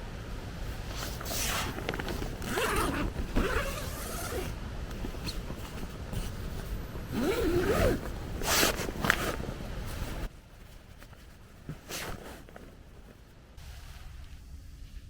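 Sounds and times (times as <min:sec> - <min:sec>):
tent zipper pulled: 0:00.9 - 0:10.3, 0:11.0 - 0:12.7.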